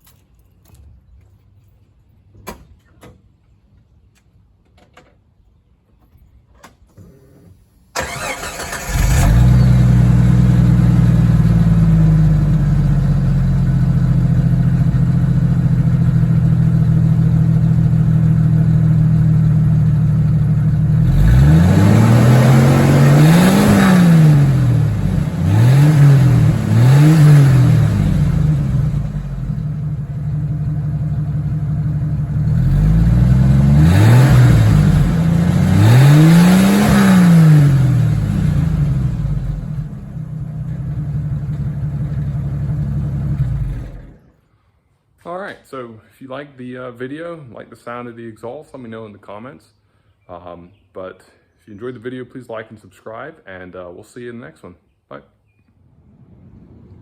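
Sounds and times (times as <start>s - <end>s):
car engine cranking and starting: 7.9s - 44.4s
car engine idling: 8.0s - 35.9s, 37.4s - 44.2s
car engine revving: 8.0s - 44.2s, 55.8s - 57.0s.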